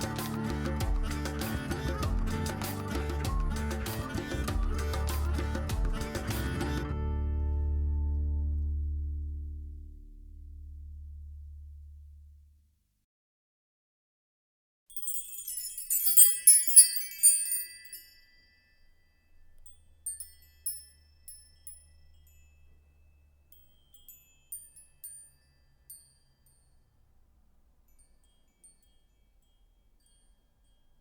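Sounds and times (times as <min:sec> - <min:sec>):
high tinkling chimes: 0:00.0 - 0:05.7, 0:14.9 - 0:31.0.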